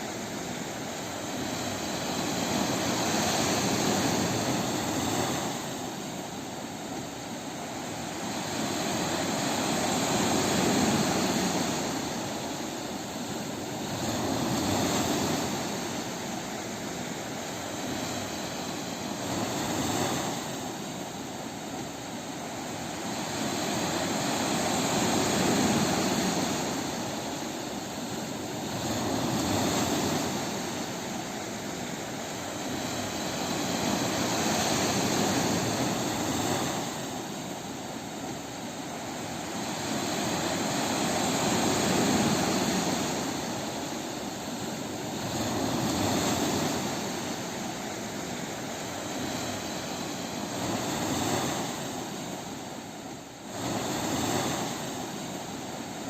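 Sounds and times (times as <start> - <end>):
ocean waves breaking: 0.0 - 56.0.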